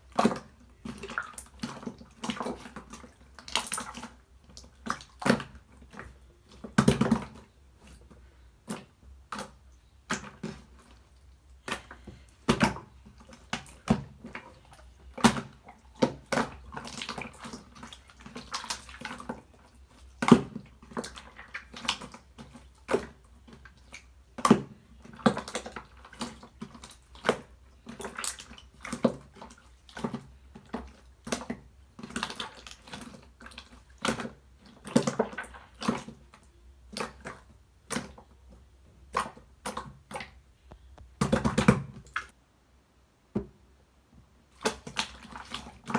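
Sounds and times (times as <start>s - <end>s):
slime squelching by hand: 0.0s - 42.4s, 44.5s - 45.9s.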